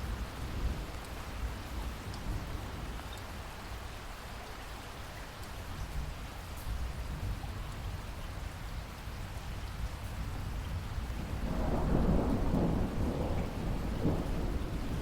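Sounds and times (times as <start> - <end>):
heavy rain: 0.0 - 15.0
raindrops ticking: 0.8 - 1.3.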